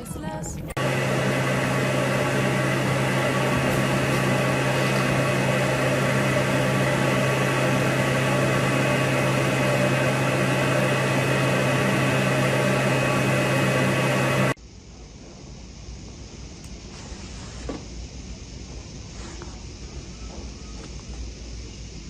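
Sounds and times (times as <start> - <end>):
motor humming: 0.0 - 14.6.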